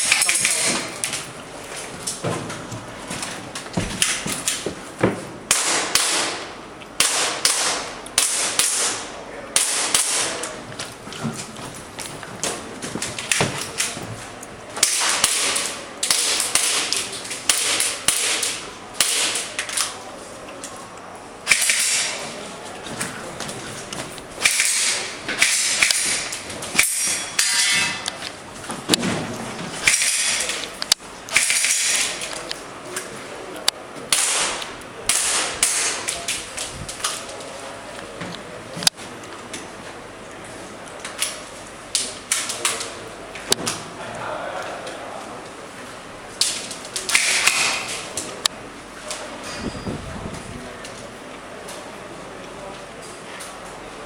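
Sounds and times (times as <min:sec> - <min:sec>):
airsoft gun shots: 0:05.5 - 0:09.0, 0:09.6 - 0:10.4, 0:17.5 - 0:19.4, 0:34.1 - 0:36.0
pellets clanking on metal targets: 0:24.4 - 0:28.1, 0:29.8 - 0:30.6.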